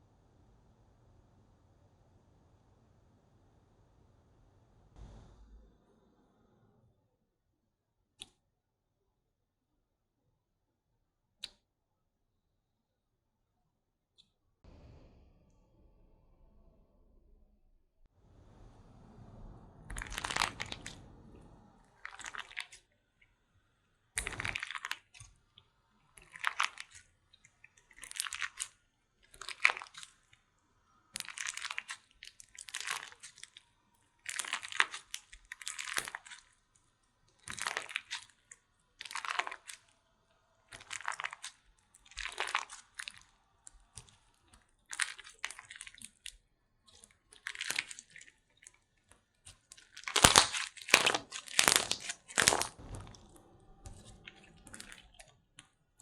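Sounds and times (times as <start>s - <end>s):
slime squishing by hand: 19.3s - 56.0s.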